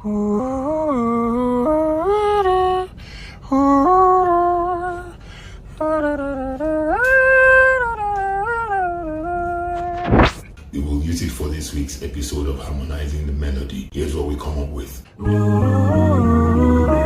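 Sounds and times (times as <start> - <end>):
person singing unaccompanied: 0.0 - 5.1, 5.8 - 10.3, 15.2 - 17.0.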